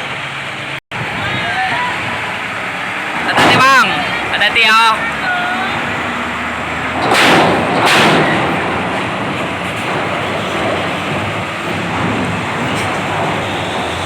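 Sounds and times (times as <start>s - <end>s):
engines rumbling: 0.0s - 14.0s
wind: 0.0s - 14.0s
wheels banging over steel ramp: 3.0s - 14.0s.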